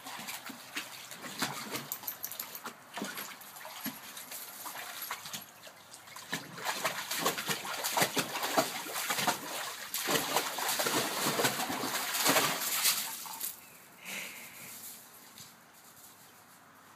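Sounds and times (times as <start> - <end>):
puppy splashing in water: 0.0 - 13.6.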